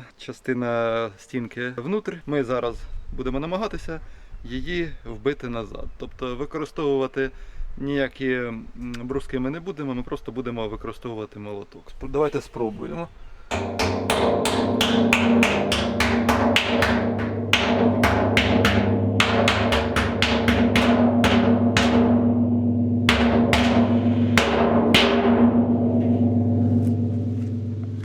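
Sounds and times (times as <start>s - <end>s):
hammer blows on metal barrel: 12.5s - 28.0s.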